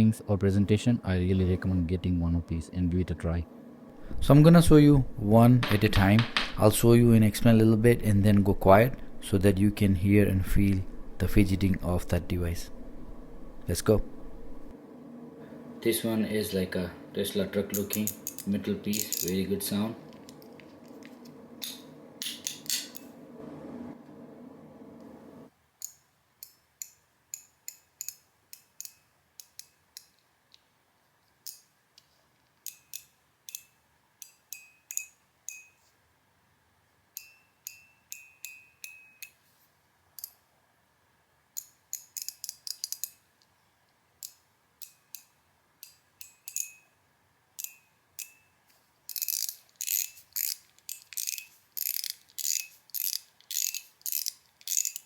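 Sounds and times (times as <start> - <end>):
metal fidget toy clicking: 17.7 - 19.4, 25.8 - 30.2, 32.6 - 35.7, 41.6 - 43.2, 44.2 - 46.8, 47.6 - 48.4, 49.1 - 55.0.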